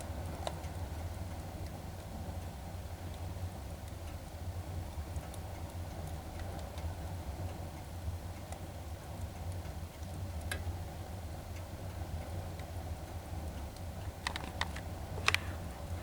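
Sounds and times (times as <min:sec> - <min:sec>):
pops and snaps of burning wood: 0:00.0 - 0:04.2, 0:04.9 - 0:07.0, 0:08.4 - 0:10.8, 0:13.5 - 0:16.0
log fire crackling: 0:00.0 - 0:16.0
steady low hum: 0:00.0 - 0:16.0.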